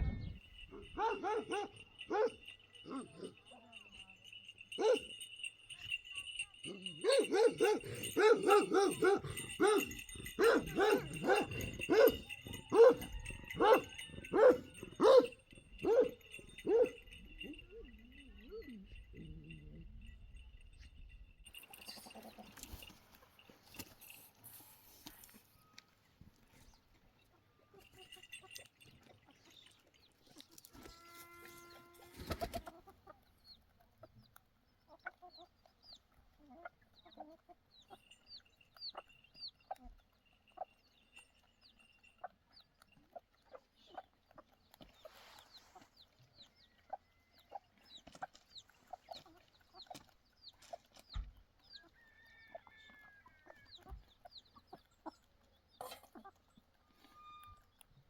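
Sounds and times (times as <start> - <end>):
chickens clucking: 21.6 - 24.0, 31.8 - 40.8, 42.1 - 58.0.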